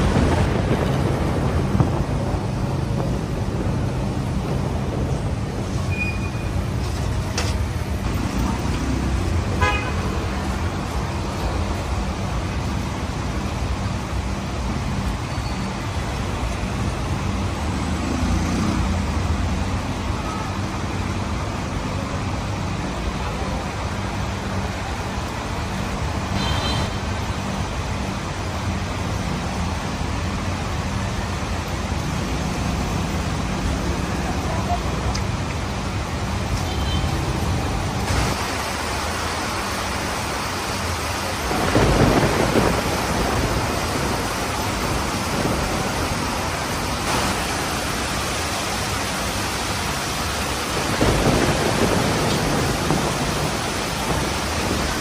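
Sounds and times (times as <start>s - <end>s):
road traffic engines: 0.0s - 55.0s
car horn toots: 9.6s - 10.0s, 26.4s - 27.0s.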